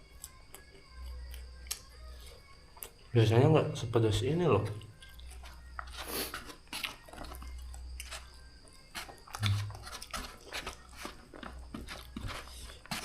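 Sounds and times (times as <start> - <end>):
person chewing noodles: 4.8 - 13.0.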